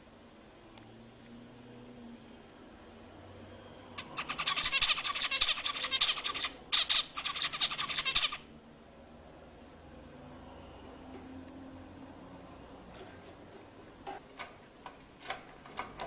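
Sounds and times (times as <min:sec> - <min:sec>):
finch singing rapid clicking notes: 0:04.0 - 0:08.4.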